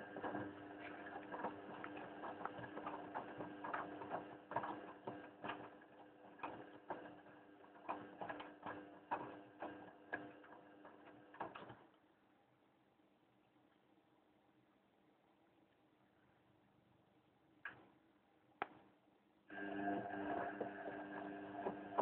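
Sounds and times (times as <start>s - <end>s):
washing machine motor hum: 0.0s - 11.9s, 19.5s - 22.0s
clicking and knocking: 0.2s - 12.0s.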